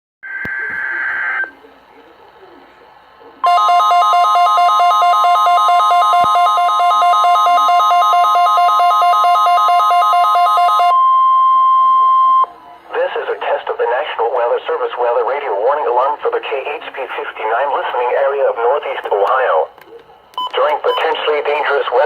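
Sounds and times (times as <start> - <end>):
steady electronic alarm tone: 3.4 - 12.5.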